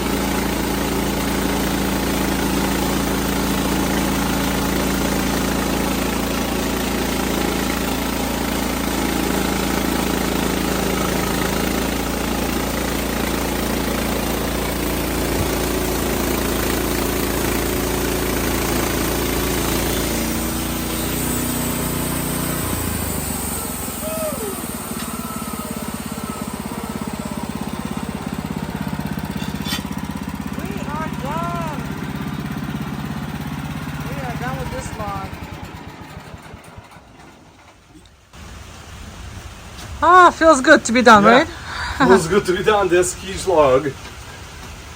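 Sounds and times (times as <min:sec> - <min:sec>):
sawmill engine running: 0:00.0 - 0:44.9.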